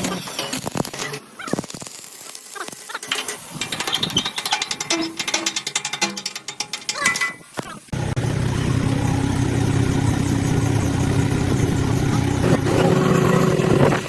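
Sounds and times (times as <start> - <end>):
hissing crackle: 0.0 - 4.3
engine running: 7.9 - 14.0.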